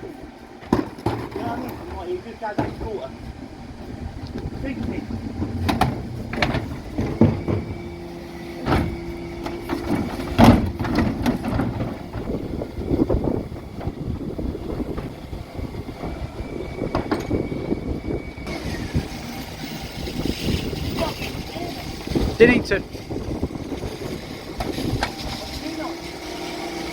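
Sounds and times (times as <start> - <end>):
bin lift whine: 0.0 - 26.9
truck engine running: 0.0 - 26.9
knocks and bangs: 4.7 - 8.0.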